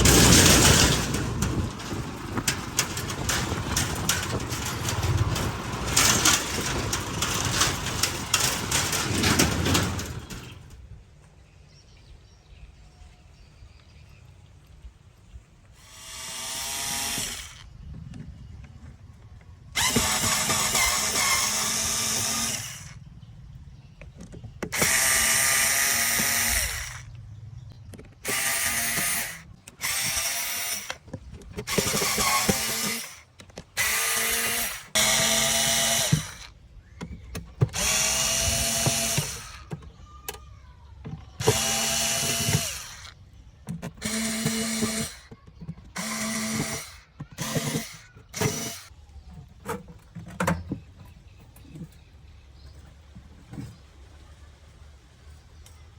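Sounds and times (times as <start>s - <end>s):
power drill motor whine: 15.8s - 17.7s, 19.8s - 23.0s, 24.8s - 27.1s, 33.8s - 36.5s, 37.7s - 39.6s, 41.4s - 43.2s, 44.0s - 45.3s, 46.0s - 48.9s.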